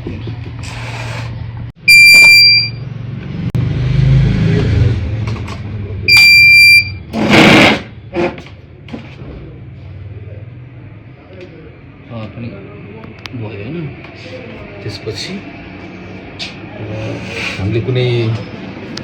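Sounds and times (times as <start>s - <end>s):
ups buzzer beeping: 1.8s - 2.9s, 6.1s - 7.7s
loud short noise: 7.1s - 8.3s.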